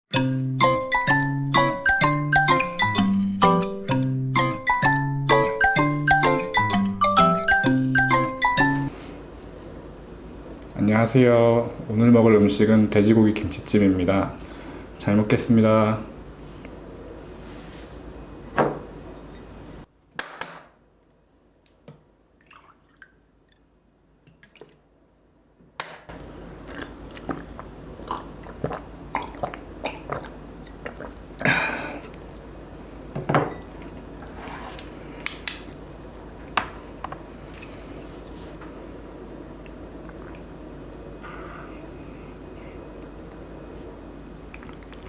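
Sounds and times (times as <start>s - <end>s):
background hum: 21.0s - 45.0s
chewing: 26.6s - 31.3s.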